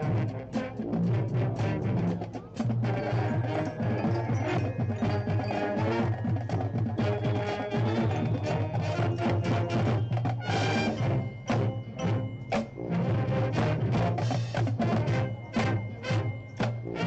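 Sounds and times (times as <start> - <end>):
mallet and timpani hits: 0.0 - 17.0
marching band brass and woodwinds: 0.0 - 17.0
marching percussion: 0.0 - 17.0.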